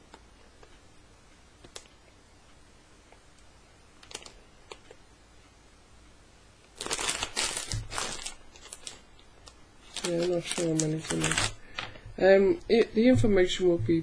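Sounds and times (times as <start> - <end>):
plastic pack rustling and crinkling: 4.0 - 5.0, 6.6 - 12.1.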